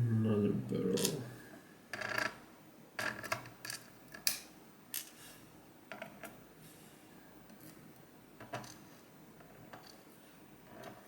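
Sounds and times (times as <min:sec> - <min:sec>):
faint room noise: 0:00.0 - 0:11.0
metallic clicks of lock parts: 0:03.0 - 0:05.2.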